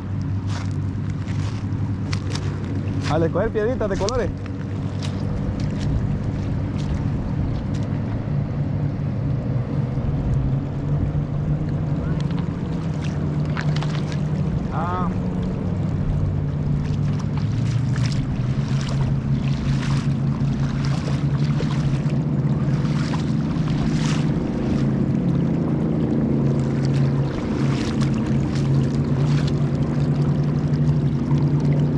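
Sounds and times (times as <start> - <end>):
low motor hum: 0.0 - 31.9
short splashes or clicks: 0.2 - 8.1, 11.7 - 15.9, 16.8 - 25.4, 26.5 - 31.9.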